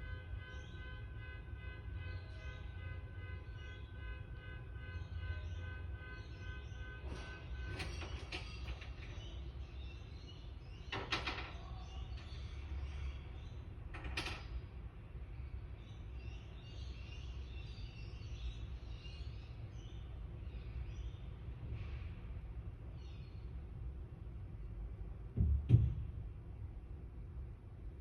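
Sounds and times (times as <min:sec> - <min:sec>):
knocks and bangs through wall: 0:25.4 - 0:26.2.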